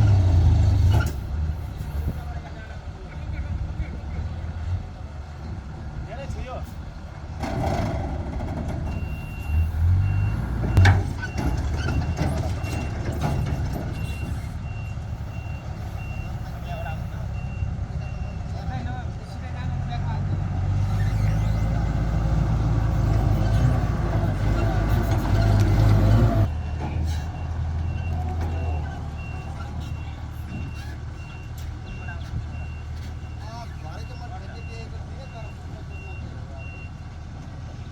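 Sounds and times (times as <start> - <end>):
diesel engine running: 0.0 - 6.1, 6.7 - 37.9
reversing alarm beeping: 8.9 - 18.3.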